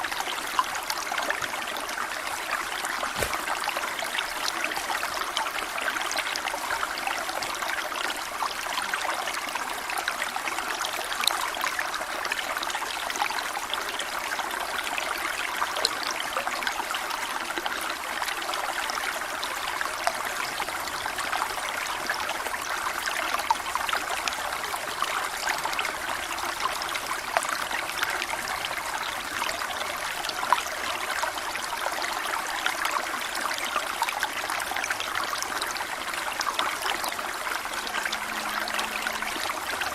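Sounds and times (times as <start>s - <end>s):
waterfall splashing: 3.1s - 3.6s.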